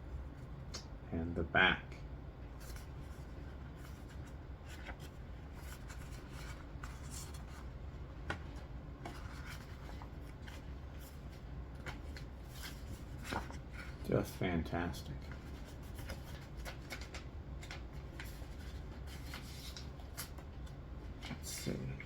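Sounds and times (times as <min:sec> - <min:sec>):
paper comic rustling and scraping: 0:02.6 - 0:07.8, 0:08.4 - 0:14.4, 0:15.1 - 0:20.5.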